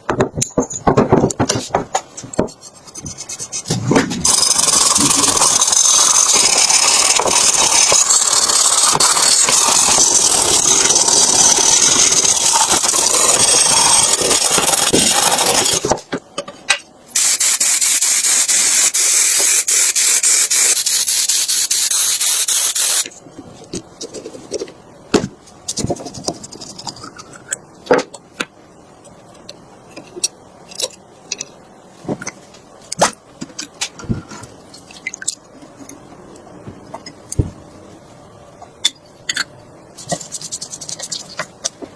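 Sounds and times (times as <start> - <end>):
loud spraying hiss: 17.2 - 23.0.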